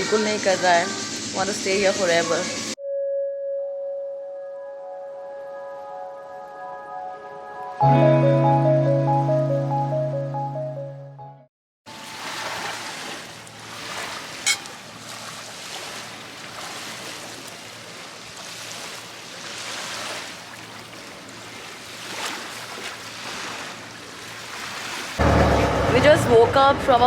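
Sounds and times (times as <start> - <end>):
sea waves washing in: 11.9 - 27.0.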